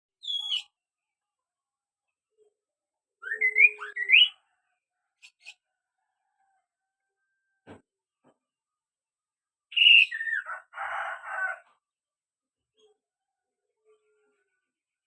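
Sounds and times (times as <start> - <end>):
bird whistling: 0.2 - 0.7, 3.2 - 4.4, 9.7 - 10.4.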